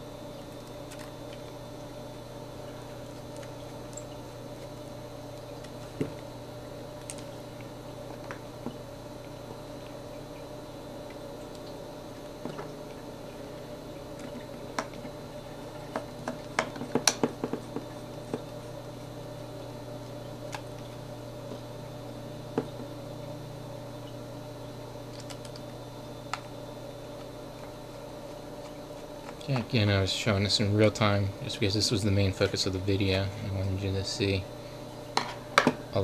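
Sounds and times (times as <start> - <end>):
steady low hum: 0.0 - 36.0.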